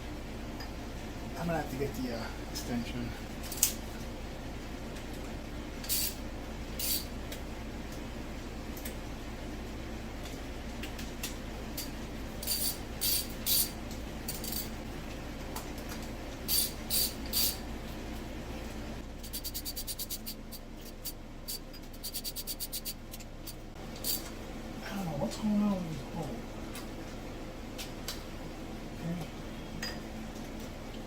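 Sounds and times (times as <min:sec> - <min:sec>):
socket ratchet clicking: 0:16.5 - 0:17.6, 0:19.2 - 0:24.2.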